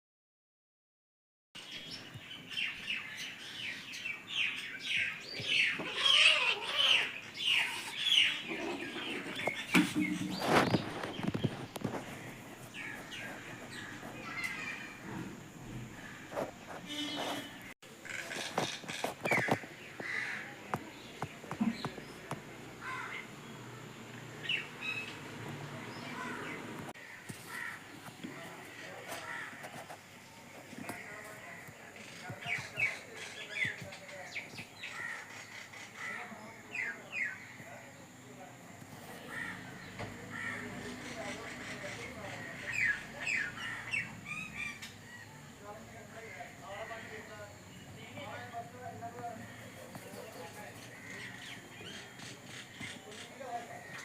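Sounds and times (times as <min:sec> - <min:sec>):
kittens mewing: 0:05.6 - 0:09.4.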